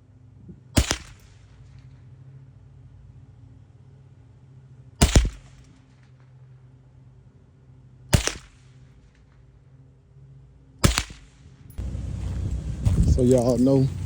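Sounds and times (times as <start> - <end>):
rifle shots with echo: 0.8 - 2.0, 5.0 - 6.0, 8.1 - 8.9, 10.8 - 11.6.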